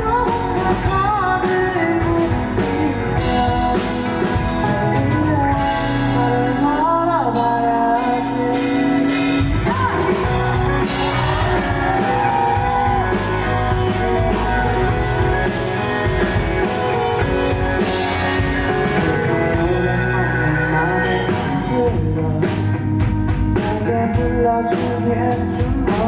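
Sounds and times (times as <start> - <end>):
man singing: 0.0 - 9.1, 18.6 - 26.0
band playing guitar and drums: 0.0 - 26.0.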